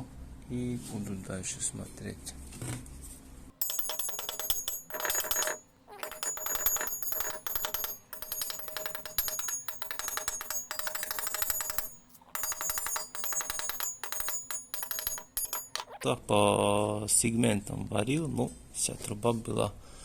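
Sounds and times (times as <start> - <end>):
metal pipe ringing: 3.6 - 16.0.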